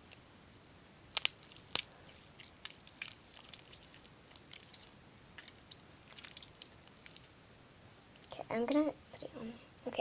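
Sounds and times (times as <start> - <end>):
slime squished in hands: 1.1 - 7.3.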